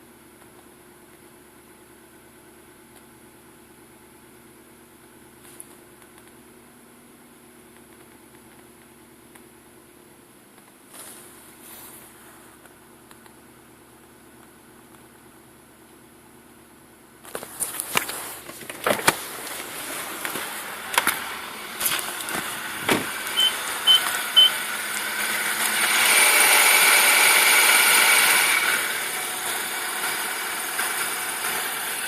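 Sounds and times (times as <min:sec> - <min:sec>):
car engine running: 0:00.3 - 0:32.0
car door and control clicks: 0:18.0 - 0:19.3, 0:20.2 - 0:24.1
short chime beeps: 0:23.4 - 0:24.6.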